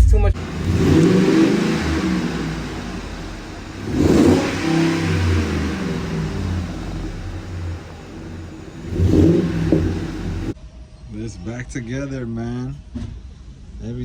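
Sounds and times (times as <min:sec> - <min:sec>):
vehicle engine revving: 0:00.3 - 0:10.6.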